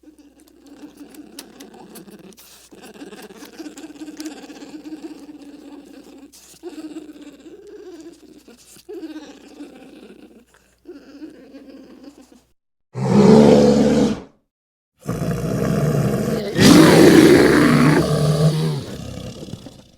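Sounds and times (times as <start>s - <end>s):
bear roar: 13.0s - 14.4s, 15.0s - 19.9s
bear calling: 16.2s - 19.0s.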